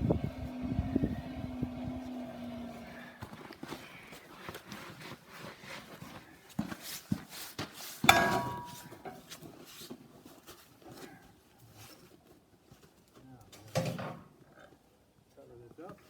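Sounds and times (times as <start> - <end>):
sharp ringing metal clank: 8.1 - 9.0
metal knocking and clattering: 8.1 - 9.2.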